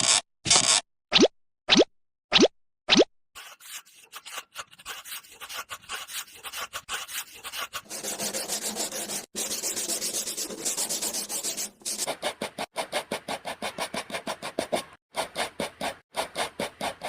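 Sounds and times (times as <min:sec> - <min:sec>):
rubbing strokes on hard surface: 0:03.4 - 0:17.0.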